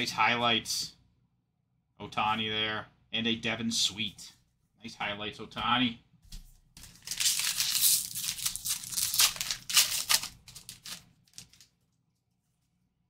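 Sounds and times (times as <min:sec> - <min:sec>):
wrapper tearing and crinkling: 0:06.8 - 0:11.8.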